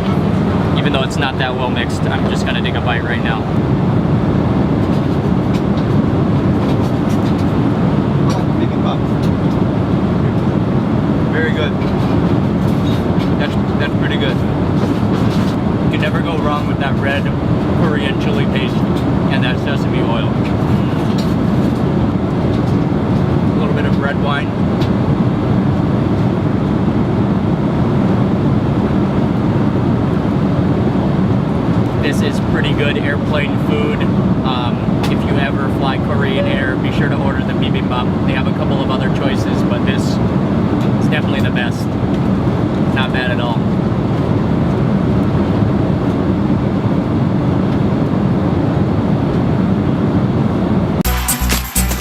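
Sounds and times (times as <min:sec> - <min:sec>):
airliner cabin drone: 0:00.0 - 0:52.0
music: 0:51.0 - 0:52.0.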